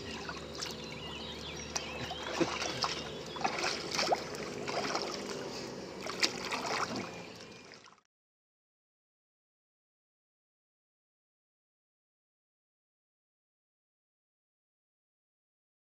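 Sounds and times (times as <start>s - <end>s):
water lapping around boat: 0.0s - 8.1s.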